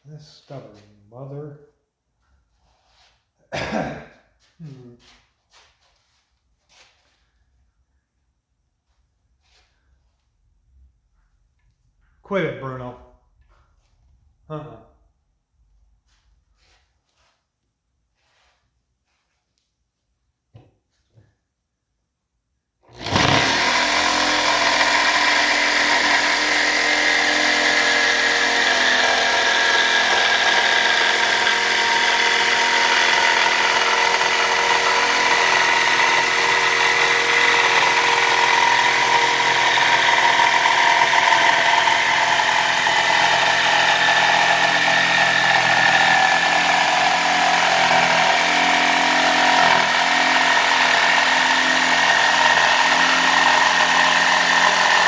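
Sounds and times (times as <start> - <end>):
power tool cutting metal: 22.9 - 55.0.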